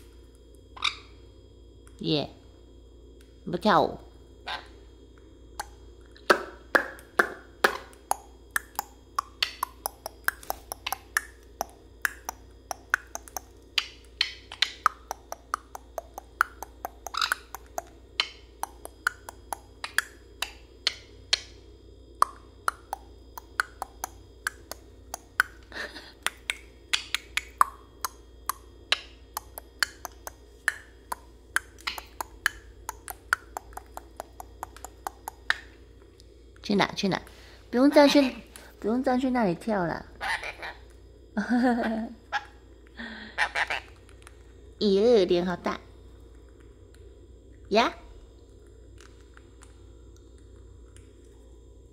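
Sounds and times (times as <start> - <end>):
parrot chirps: 0.8 - 1.2, 4.4 - 4.8, 7.7 - 21.6, 22.3 - 28.2, 28.9 - 35.8, 40.2 - 41.0, 42.2 - 42.6, 43.3 - 44.4
parrot beak clicks and taps: 5.6 - 21.5, 22.2 - 35.7.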